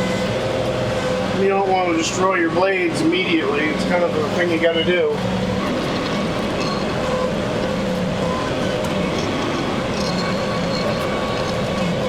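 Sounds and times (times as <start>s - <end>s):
tractor diesel engine running: 0.0s - 12.0s
faint whine: 3.4s - 12.0s.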